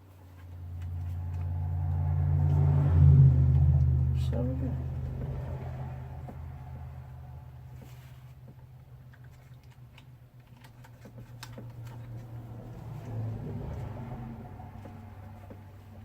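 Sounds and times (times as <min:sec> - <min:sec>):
clicks and taps of handling plastic: 0:07.8 - 0:12.4.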